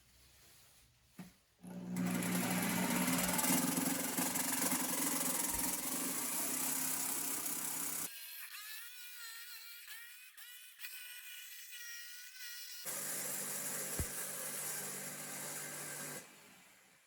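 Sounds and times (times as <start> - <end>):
power tool motor whining: 1.7 - 8.1, 12.8 - 16.3
rough buzz: 1.9 - 16.3.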